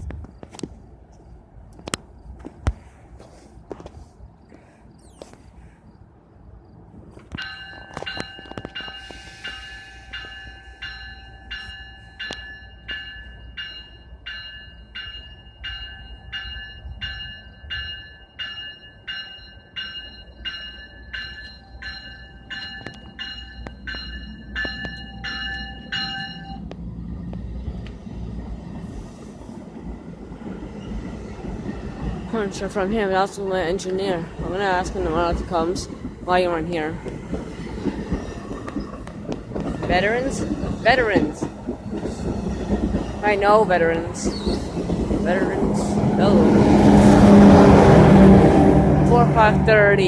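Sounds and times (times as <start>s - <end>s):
low rumble of train: 0.0s - 50.0s
crossing warning bell ringing: 7.3s - 26.7s.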